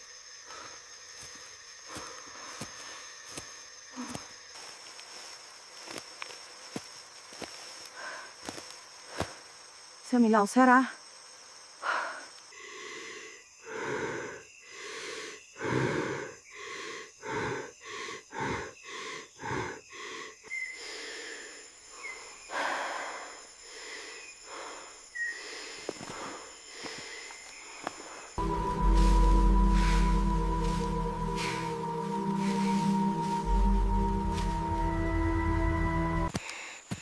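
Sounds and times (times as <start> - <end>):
insect chirring: 0.0 - 37.0
person breathing heavily: 7.9 - 9.4, 11.8 - 34.8.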